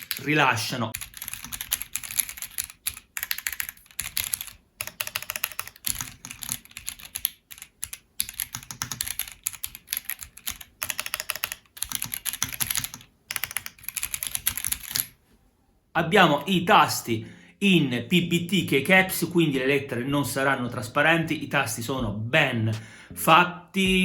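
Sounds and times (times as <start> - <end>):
mechanical keyboard keystroke clacks: 0.0 - 0.3, 1.0 - 15.1.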